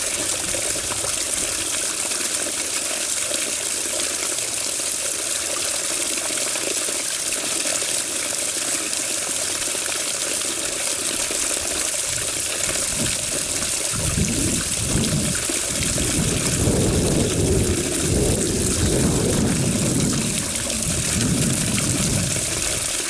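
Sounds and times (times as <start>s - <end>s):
deep water gurgle: 0.0s - 6.1s, 10.7s - 23.0s
water running with hissing rush: 0.0s - 23.0s.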